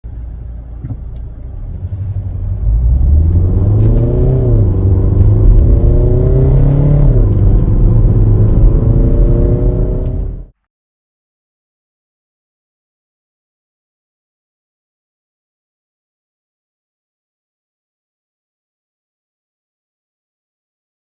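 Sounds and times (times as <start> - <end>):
synthetic sporty engine note: 2.6 - 10.5.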